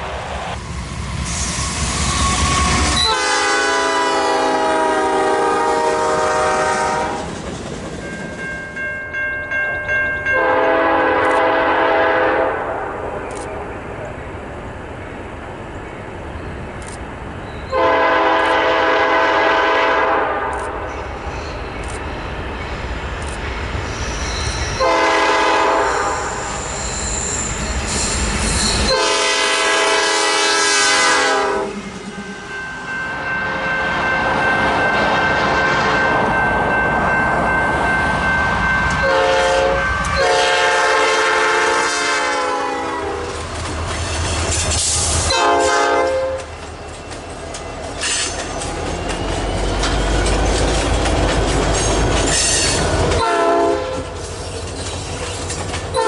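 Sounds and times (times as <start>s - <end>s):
train rumble and rail clatter: 0.0s - 56.0s
steady high squeal: 0.4s - 3.3s, 20.9s - 24.9s, 25.8s - 29.0s
locomotive horn chord blasts: 3.0s - 7.3s, 10.3s - 12.9s, 17.7s - 20.5s, 24.8s - 26.4s, 28.9s - 31.8s, 39.0s - 43.4s, 45.3s - 46.5s, 53.2s - 54.2s.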